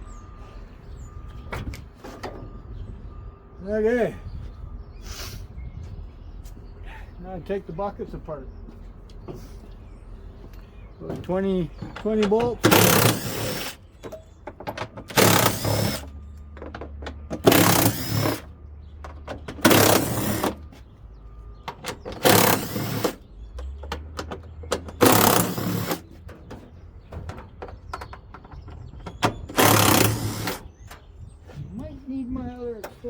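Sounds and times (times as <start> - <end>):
impact driver bursts: 12.5 - 13.8, 14.8 - 16.1, 17.3 - 18.5, 19.4 - 20.7, 21.8 - 23.3, 24.8 - 26.2, 29.2 - 30.8.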